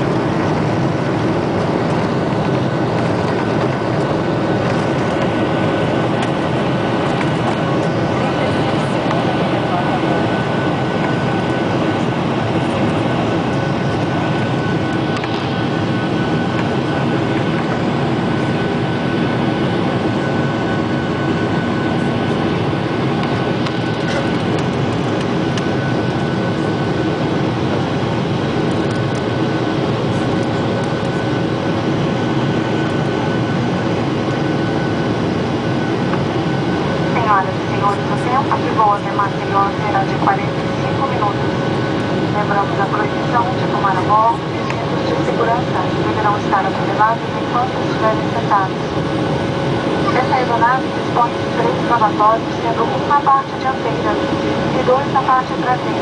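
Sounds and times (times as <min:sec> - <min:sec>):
airliner cabin engine rumble: 0:00.0 - 0:56.0.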